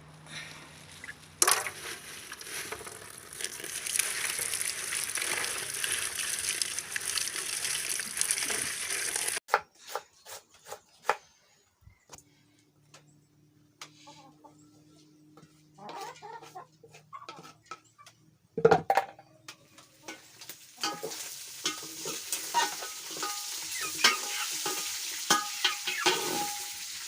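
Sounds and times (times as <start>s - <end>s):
food sizzling in a hot pan: 20.2s - 27.0s.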